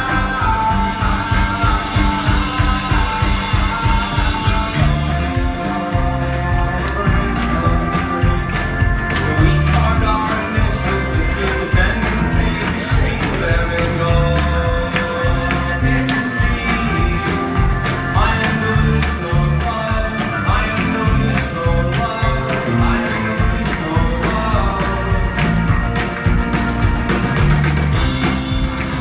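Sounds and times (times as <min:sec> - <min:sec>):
rock band playing live: 0:00.0 - 0:29.0.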